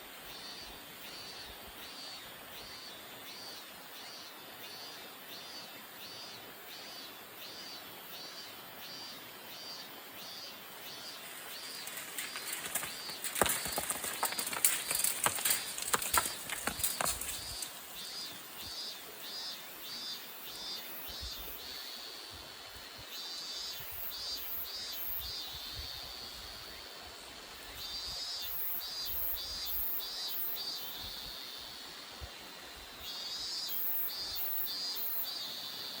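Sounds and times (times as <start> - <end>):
cicadas pulsing song: 0.0 - 36.0
steady background hiss: 0.0 - 36.0.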